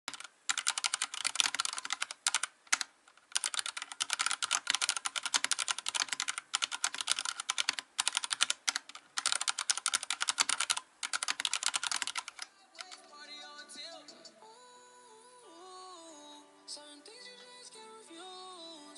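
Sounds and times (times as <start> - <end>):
fast typing on mechanical keyboard: 0.1 - 13.0
soft music: 12.4 - 18.9.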